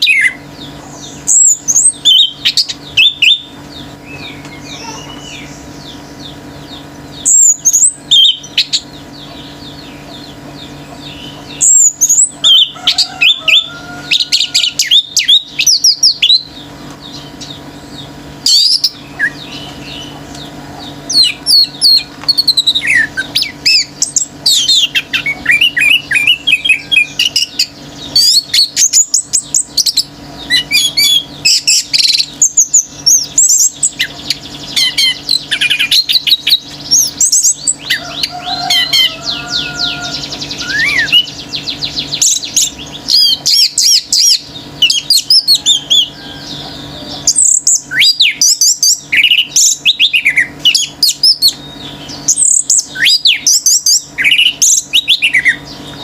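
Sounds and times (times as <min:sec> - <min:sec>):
other birds calling: 0:00.0 - 0:56.0
steady low hum: 0:00.0 - 0:56.0
thrush singing whistled phrases: 0:38.7 - 0:46.1, 0:52.4 - 0:55.6.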